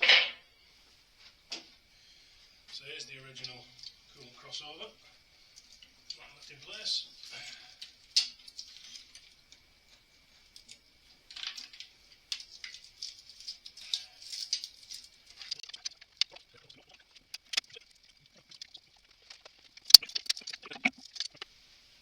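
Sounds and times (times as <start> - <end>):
metal parts clicking and rattling: 10.4 - 17.8, 18.4 - 21.4.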